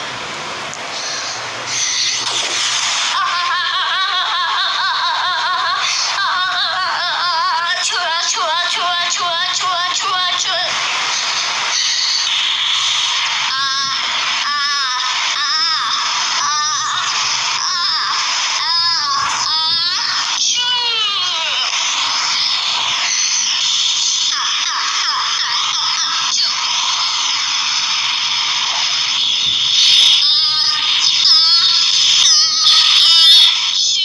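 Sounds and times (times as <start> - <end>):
hissing burst: 0.8 - 3.8, 10.2 - 20.4, 25.9 - 33.8
warbling laugh-like processed voice: 3.0 - 7.4
high-pitched crying voice: 3.2 - 8.2, 30.2 - 34.0.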